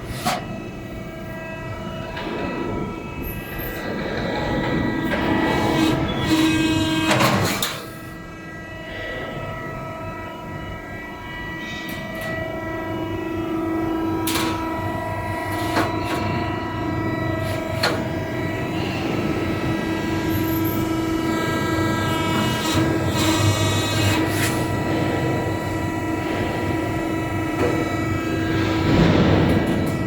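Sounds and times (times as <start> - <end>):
hydraulic pump humming: 12.2 - 30.0.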